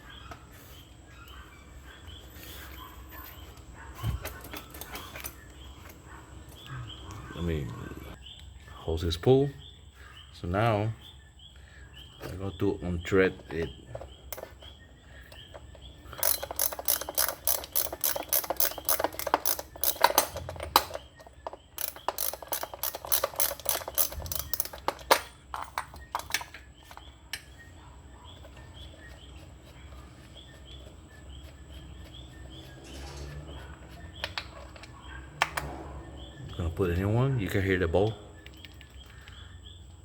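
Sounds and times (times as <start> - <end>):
socket ratchet clicking: 16.1 - 26.5.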